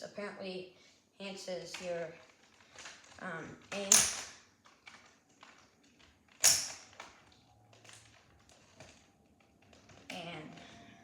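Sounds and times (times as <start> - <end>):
sharp plastic snap: 6.4 - 7.1.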